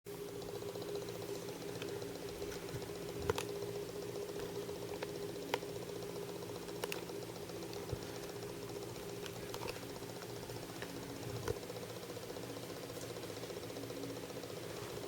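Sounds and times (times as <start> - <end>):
droning hum: 0.1 - 15.0
sharp clicks and ticks: 0.3 - 13.7.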